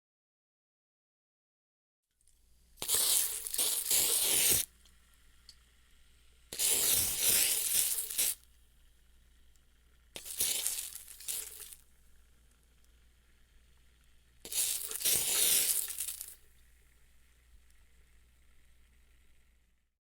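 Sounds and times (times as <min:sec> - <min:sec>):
aerosol can spraying: 0:02.8 - 0:04.7, 0:06.5 - 0:08.4, 0:10.2 - 0:11.8, 0:14.5 - 0:16.4.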